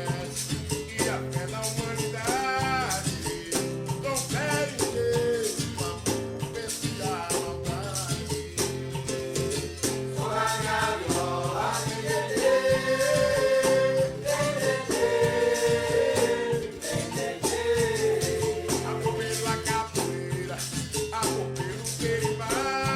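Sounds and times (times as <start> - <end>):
steady percussion rhythm: 0.0 - 22.9
person singing: 11.0 - 20.6.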